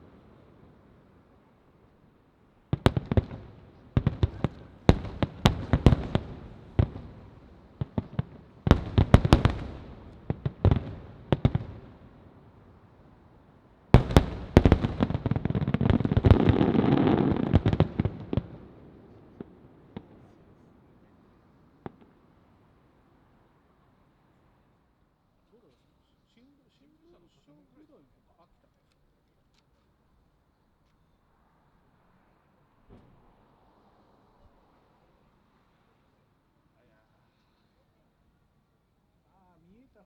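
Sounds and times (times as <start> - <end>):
firework shells bursting: 2.8 - 11.9, 14.0 - 18.6.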